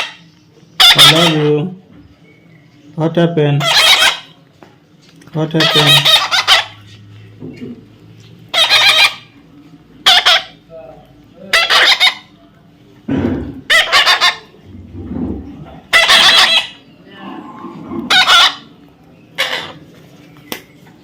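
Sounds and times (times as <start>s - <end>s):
parrot screeching: 0.0s - 0.2s, 0.8s - 1.6s, 3.6s - 4.4s, 5.5s - 6.9s, 8.5s - 9.4s, 10.0s - 10.6s, 11.4s - 12.3s, 13.7s - 14.6s, 15.8s - 18.8s, 19.4s - 19.8s.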